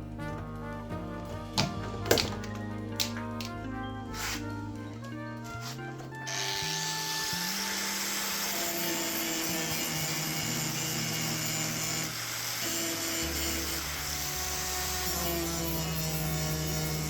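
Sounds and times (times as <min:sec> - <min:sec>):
background music: 0:00.0 - 0:17.0
tool rasping on car bodywork: 0:05.6 - 0:17.0.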